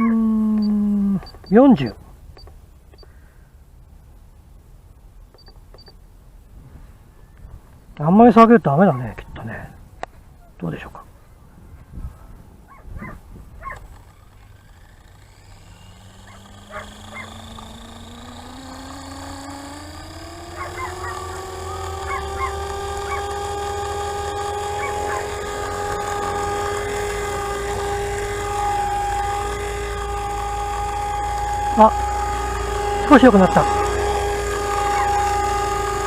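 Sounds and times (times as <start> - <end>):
model helicopter rotor whine: 0.0 - 3.7, 12.7 - 36.0.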